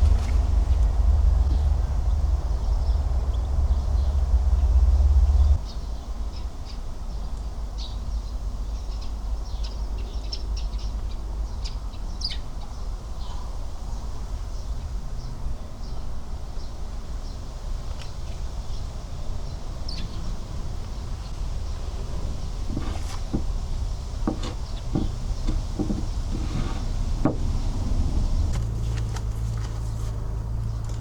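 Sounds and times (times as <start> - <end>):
steady low rumble: 0.0 - 5.6, 17.4 - 31.0
small birds chirping: 0.0 - 31.0.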